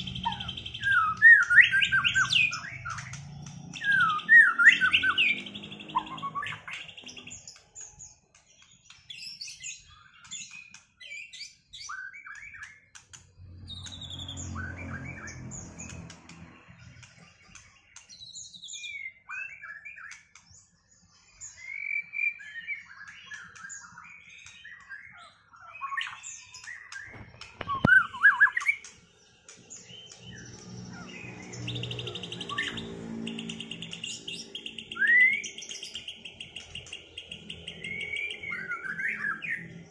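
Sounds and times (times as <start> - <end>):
birds singing whistles and trills: 0.0 - 39.9.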